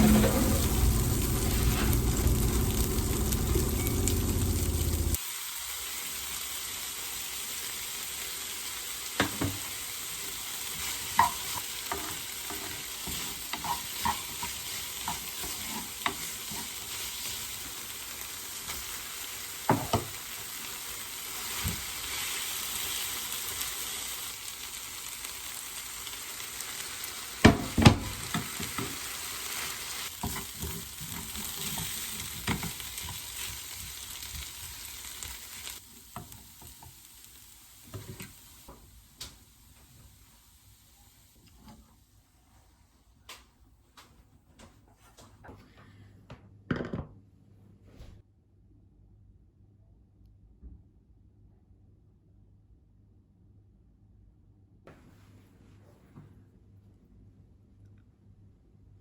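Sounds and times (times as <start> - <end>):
utensil scraping and knocking pan: 0.0 - 3.9
low rumble: 0.0 - 5.2
food sizzling in a frying pan: 0.0 - 41.8.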